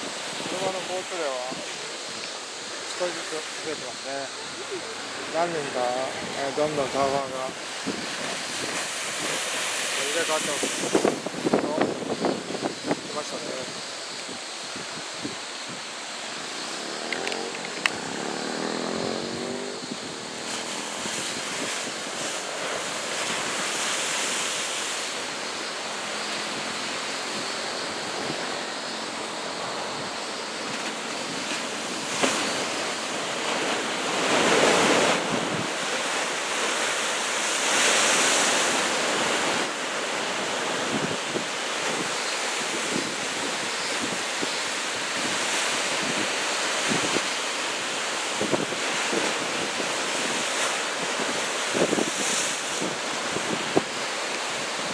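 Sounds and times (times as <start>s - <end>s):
ocean surf breaking: 0.0s - 54.9s
wind buffeting microphone: 6.1s - 15.8s, 16.4s - 22.4s.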